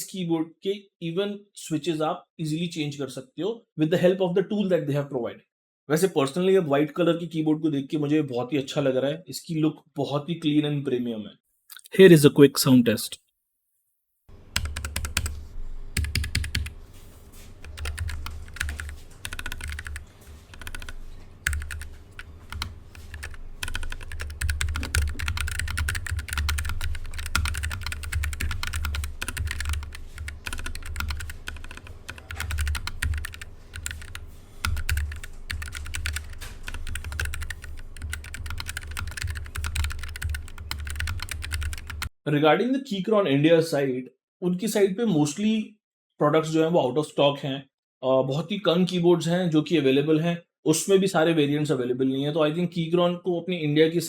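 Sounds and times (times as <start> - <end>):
mechanical keyboard typing: 14.5 - 16.8, 17.6 - 42.1.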